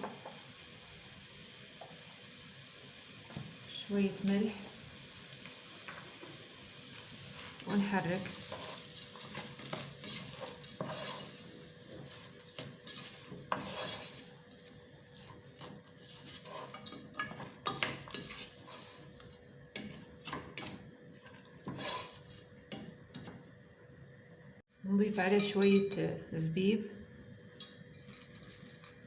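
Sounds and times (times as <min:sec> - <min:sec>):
oil sizzling: 0:00.0 - 0:24.4
spoon scraping a pot: 0:08.2 - 0:14.4, 0:15.2 - 0:22.5.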